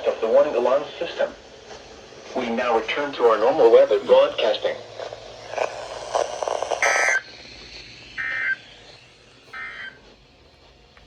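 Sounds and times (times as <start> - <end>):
warbling data bursts: 5.4 - 7.4, 8.2 - 8.7.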